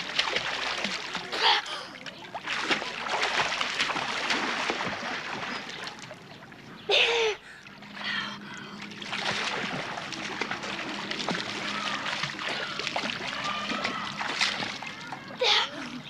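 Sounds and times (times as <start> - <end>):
water splashing from swimmers: 0.0 - 16.0.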